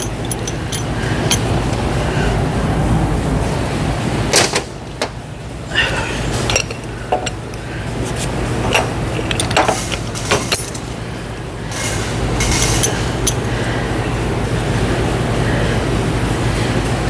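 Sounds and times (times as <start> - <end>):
metallic clinks of tools: 0.0 - 1.5, 6.4 - 7.6, 8.7 - 10.9
steady low hum: 0.0 - 17.0.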